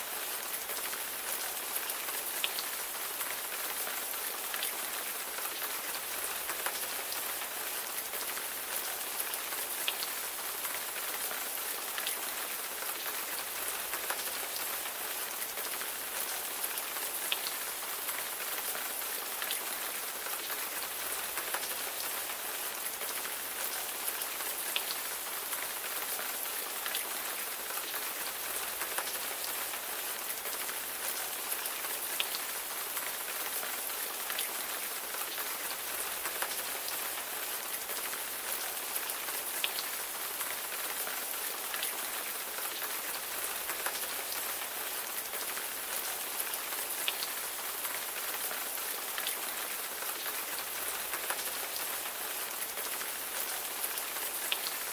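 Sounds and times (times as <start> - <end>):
steady rain hiss: 0.0 - 54.9.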